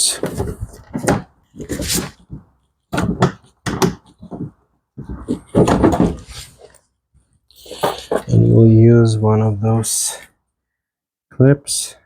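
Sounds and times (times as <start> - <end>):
plastic knocks and clatter: 0.2 - 6.8.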